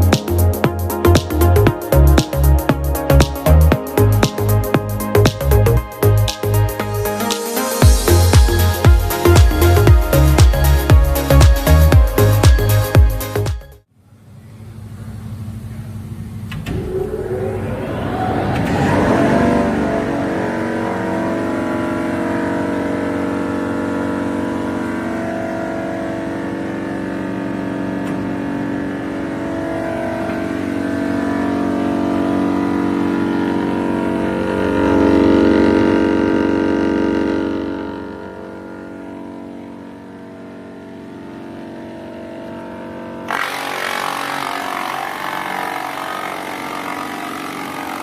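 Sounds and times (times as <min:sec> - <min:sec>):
wood shredder motor hum: 0:16.8 - 0:48.0
wood grinding noise: 0:43.3 - 0:48.0.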